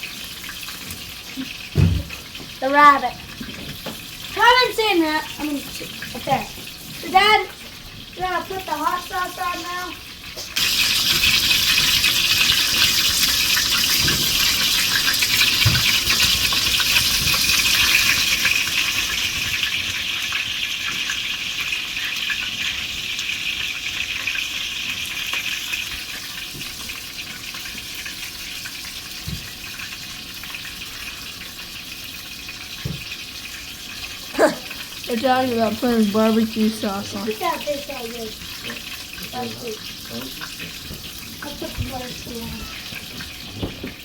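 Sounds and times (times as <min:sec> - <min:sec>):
sauce sizzling in hot pan: 0:00.0 - 0:44.0.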